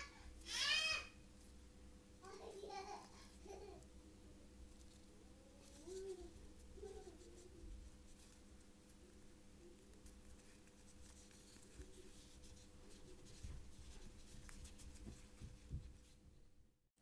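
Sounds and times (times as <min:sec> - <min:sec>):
faint steady hum: 0:00.0 - 0:16.8
yarn scratching and light taps: 0:04.6 - 0:16.2.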